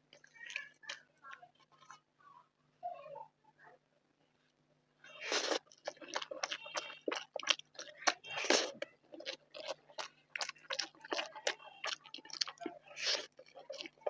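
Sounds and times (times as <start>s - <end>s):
chewing food: 0.0s - 2.0s, 5.2s - 14.0s.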